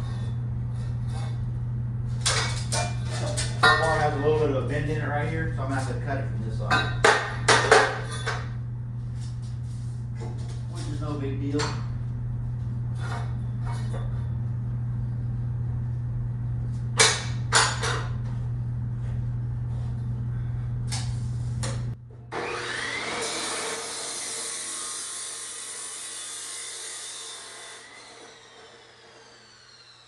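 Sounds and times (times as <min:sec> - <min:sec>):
steady low hum: 0:00.0 - 0:22.3
chop saw cutting steel: 0:22.3 - 0:30.0.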